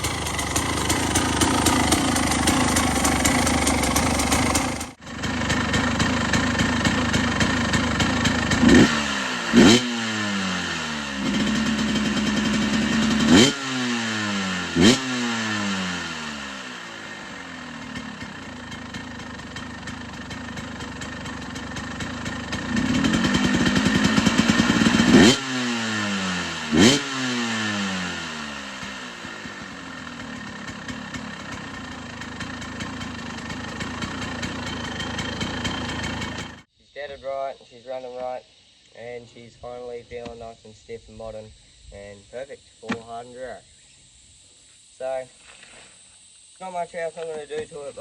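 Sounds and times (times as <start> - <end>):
dirt bike engine revving: 0.0 - 36.7.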